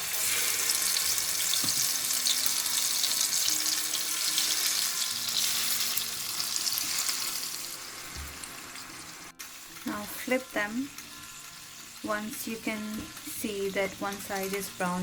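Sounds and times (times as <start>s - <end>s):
chicken sizzling in hot oil: 0.0s - 15.0s.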